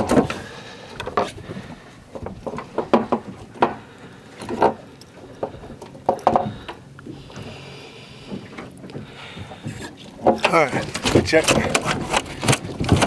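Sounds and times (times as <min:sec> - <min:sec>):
knocks and clatters on boat: 0:00.0 - 0:13.0.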